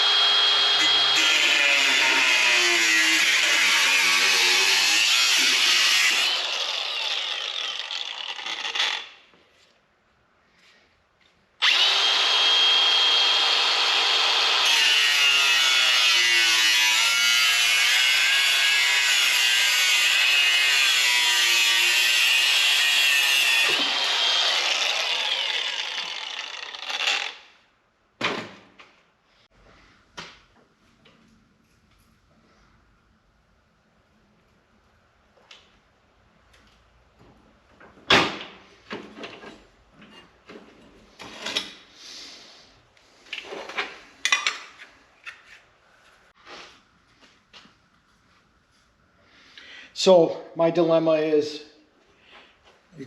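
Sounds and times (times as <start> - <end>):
power tool cutting sheet steel: 0.0 - 9.1, 11.6 - 27.4.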